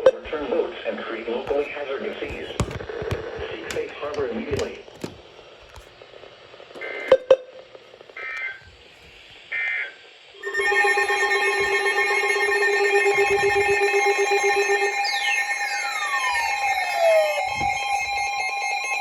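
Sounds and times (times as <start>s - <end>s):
two-tone data noise bursts: 9.5s - 19.0s
loud electronic alert tone: 10.4s - 19.0s.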